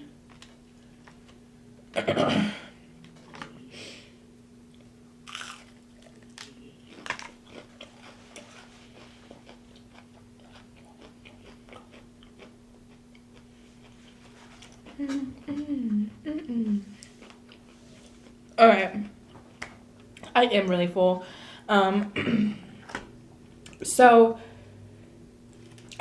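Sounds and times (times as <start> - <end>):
faint hum: 0.0 - 26.0
crunchy bite and chewing: 5.2 - 12.6.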